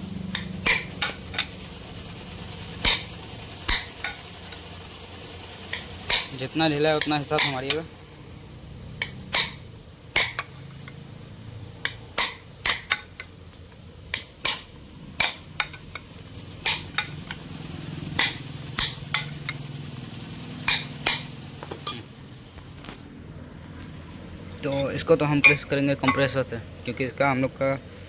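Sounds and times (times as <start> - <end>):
hammer tapping chisel on metal: 0.3 - 1.5, 7.0 - 7.9, 9.0 - 11.0, 11.8 - 17.4, 18.2 - 19.6, 20.7 - 22.1, 25.4 - 26.4.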